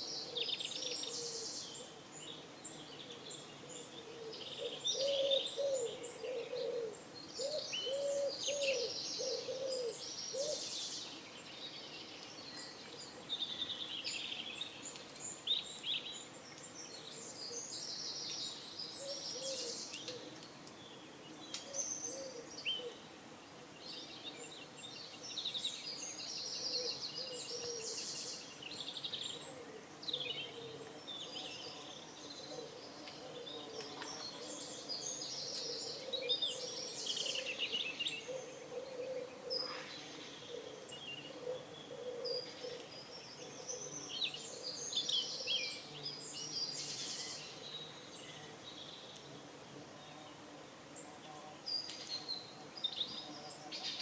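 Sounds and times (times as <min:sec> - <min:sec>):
small songbirds chirping: 0:00.0 - 0:54.0
pigeons cooing: 0:04.0 - 0:10.6, 0:35.4 - 0:37.6, 0:38.3 - 0:44.8.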